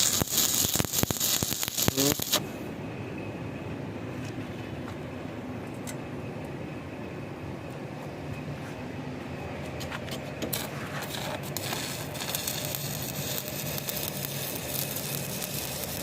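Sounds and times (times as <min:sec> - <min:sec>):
arc welding crackling hiss: 0:00.0 - 0:02.5, 0:10.5 - 0:16.0
steady low hum: 0:00.0 - 0:16.0.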